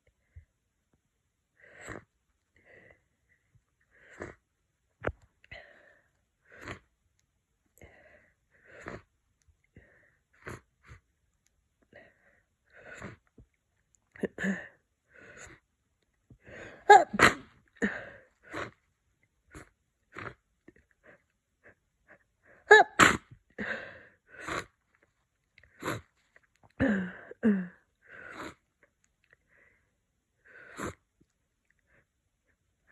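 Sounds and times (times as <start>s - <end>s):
person sniffing: 16.6s - 18.8s, 22.7s - 23.2s, 24.4s - 24.7s, 25.8s - 26.1s
person sneezing loudly: 16.9s - 17.5s, 22.7s - 23.3s.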